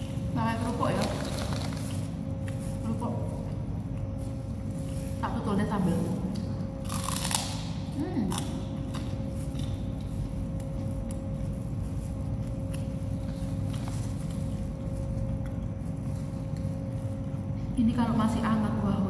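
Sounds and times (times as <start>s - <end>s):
low hum with faint tone: 0.0s - 19.0s.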